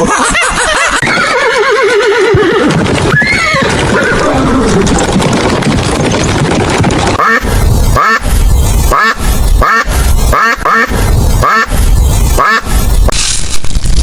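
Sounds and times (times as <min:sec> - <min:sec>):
horse whinnying: 0:00.0 - 0:05.2.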